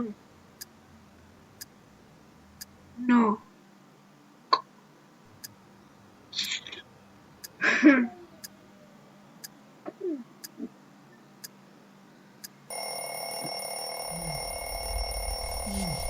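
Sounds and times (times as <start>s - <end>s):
clock ticking: 12.4s - 16.0s
steady electronic alarm tone: 12.7s - 16.0s
low rumble: 14.4s - 16.0s.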